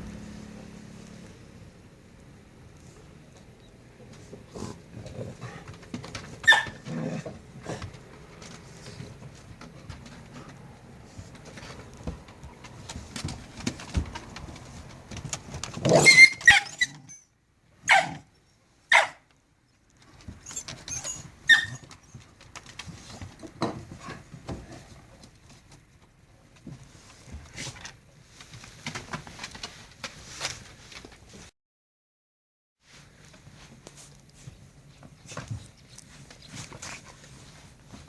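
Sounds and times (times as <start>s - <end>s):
dogs growling and yelping: 4.2s - 8.0s, 15.8s - 17.2s
dogs scuffling: 5.3s - 16.7s, 32.9s - 38.0s.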